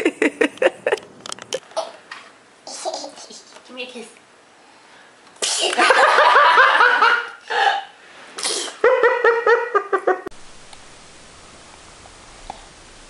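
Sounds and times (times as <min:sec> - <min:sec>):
baby giggling: 0:02.7 - 0:03.5.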